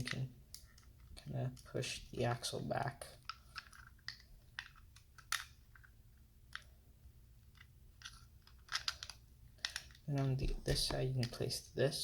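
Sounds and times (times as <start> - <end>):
plastic building pieces clicking: 3.2 - 5.9, 7.5 - 11.4.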